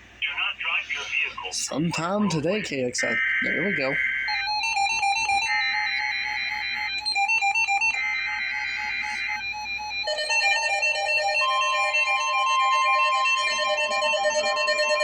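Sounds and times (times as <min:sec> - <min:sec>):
emergency alert buzzing screech: 0:03.0 - 0:15.0
plinking keyboard melody: 0:04.3 - 0:15.0.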